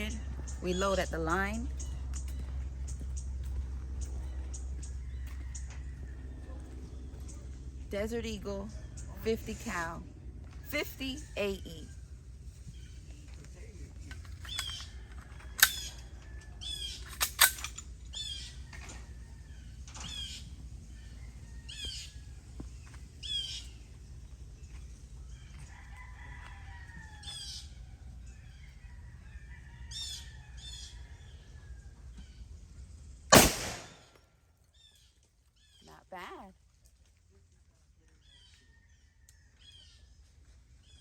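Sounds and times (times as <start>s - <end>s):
birds chirping: 0.0s - 34.1s, 34.7s - 36.5s
loud pistol gunshot: 33.3s - 34.2s
sharp cracks: 33.3s - 34.2s.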